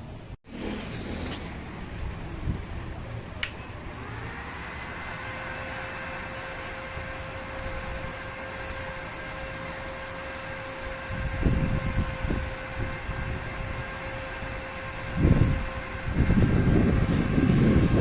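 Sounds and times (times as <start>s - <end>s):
cooling fan hum: 0.0s - 18.0s
low thumps and rumbling: 15.0s - 18.0s.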